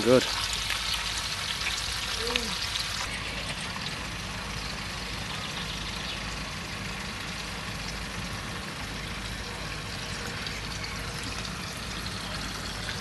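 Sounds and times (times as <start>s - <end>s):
bacon sizzling in pan: 0.0s - 4.8s
camping stove burner roaring: 0.0s - 13.0s.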